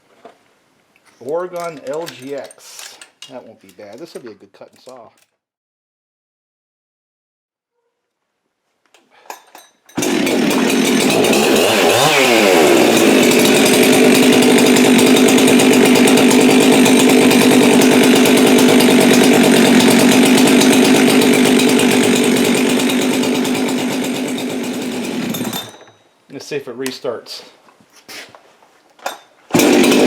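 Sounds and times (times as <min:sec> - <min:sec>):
chainsaw starting and running: 0:09.9 - 0:25.9, 0:29.5 - 0:30.0.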